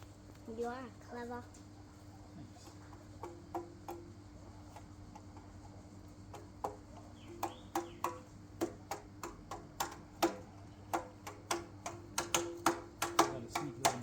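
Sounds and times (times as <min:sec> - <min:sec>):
sharp ringing taps: 0:06.4 - 0:14.0.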